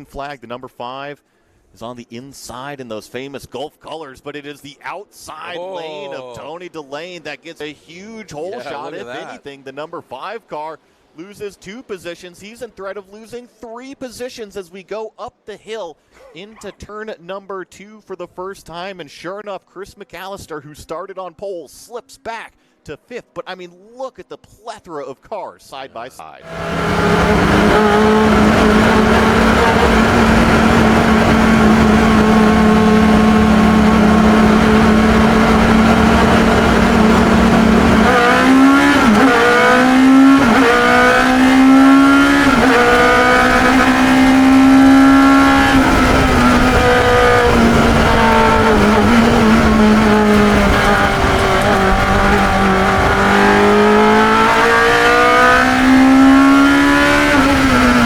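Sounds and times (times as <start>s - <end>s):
racing car engine revving: 26.4s - 58.0s.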